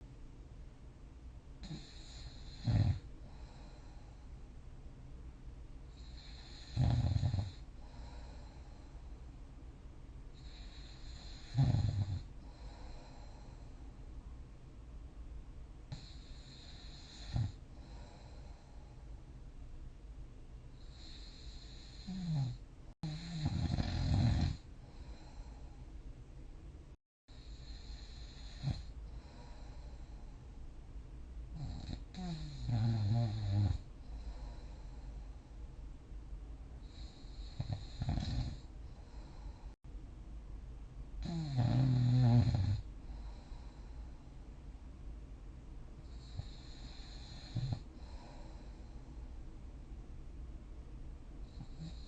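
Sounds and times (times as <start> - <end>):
quiet breathing: 1.0 - 40.0, 41.0 - 52.0
loud low snore: 1.6 - 3.1, 6.0 - 8.2, 10.4 - 13.3, 15.9 - 18.2, 20.8 - 24.6, 27.3 - 29.4, 31.6 - 34.6, 36.8 - 38.7, 41.2 - 42.8, 46.1 - 48.6.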